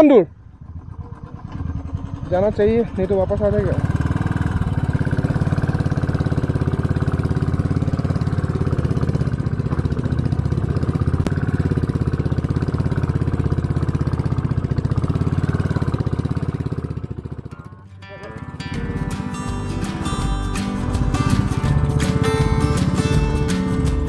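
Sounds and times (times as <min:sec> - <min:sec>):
motorcycle engine idling at low revs: 0:00.0 - 0:17.7, 0:18.8 - 0:24.0.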